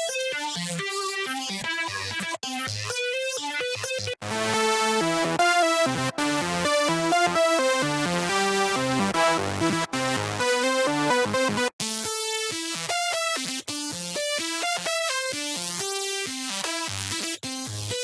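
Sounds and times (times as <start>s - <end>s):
buzzy synth bass notes: 4.2s - 11.7s.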